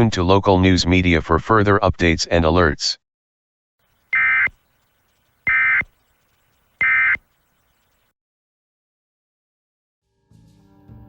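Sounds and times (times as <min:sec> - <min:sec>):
data tone bursts: 0:03.9 - 0:08.1.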